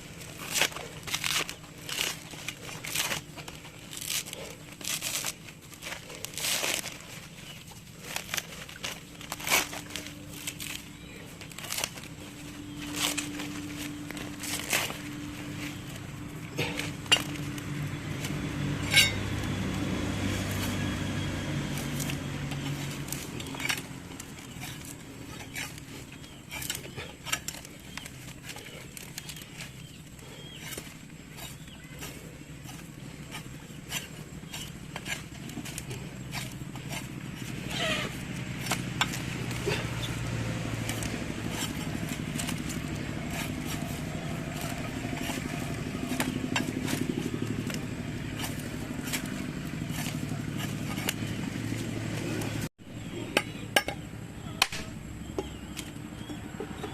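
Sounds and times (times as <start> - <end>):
motor humming: 0.0 - 56.9.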